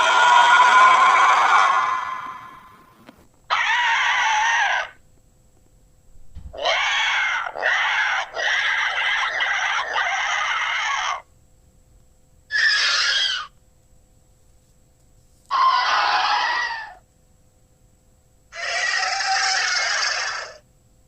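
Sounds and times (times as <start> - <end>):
shrill screeching creature cries: 0.0 - 2.9, 3.5 - 5.0, 6.6 - 11.3, 12.5 - 13.6, 15.5 - 17.0, 18.5 - 20.6.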